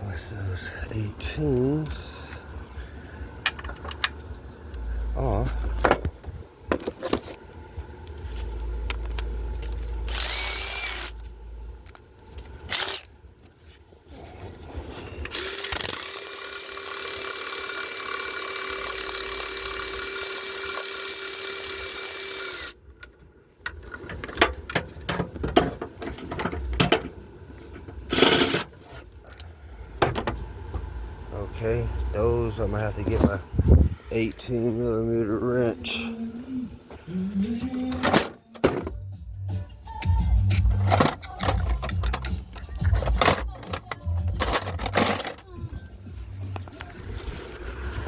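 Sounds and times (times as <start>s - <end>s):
power tool spinning out bolts: 10.1s - 11.2s, 12.7s - 13.1s, 15.3s - 22.8s, 28.1s - 28.7s
metal clicks and knocks of tools: 40.0s - 45.4s.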